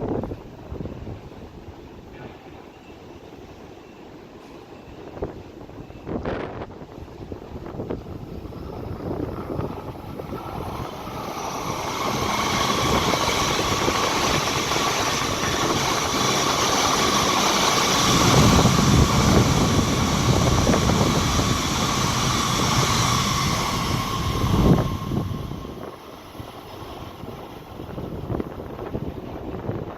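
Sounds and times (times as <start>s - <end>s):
high-speed train rumble and whine: 0.0s - 29.9s.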